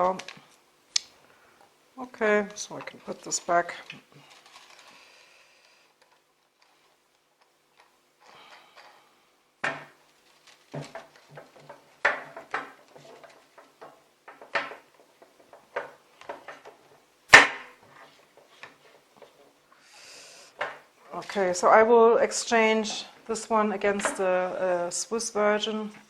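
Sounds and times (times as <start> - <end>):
objects knocking and clattering: 9.6 - 19.6.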